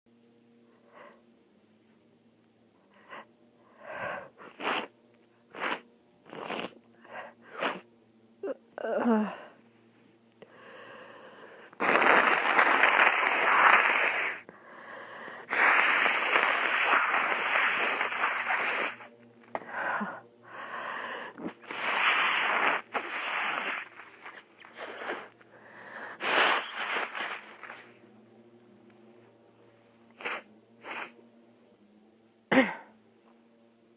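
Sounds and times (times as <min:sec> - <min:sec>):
sniffs: 0:03.9 - 0:04.9, 0:05.5 - 0:07.9, 0:10.5 - 0:20.1, 0:20.7 - 0:28.0, 0:30.1 - 0:31.2
nose blowing into handkerchief: 0:04.4 - 0:04.9, 0:05.5 - 0:06.8, 0:07.4 - 0:07.9, 0:11.5 - 0:14.5, 0:15.4 - 0:19.1, 0:21.3 - 0:25.4, 0:26.1 - 0:28.0, 0:30.2 - 0:31.2.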